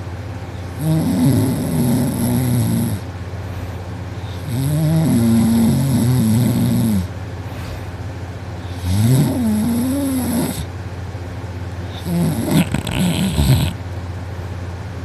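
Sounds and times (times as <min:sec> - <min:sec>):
person snoring heavily: 0:00.6 - 0:03.1, 0:04.2 - 0:07.1, 0:08.6 - 0:10.7, 0:11.9 - 0:13.8.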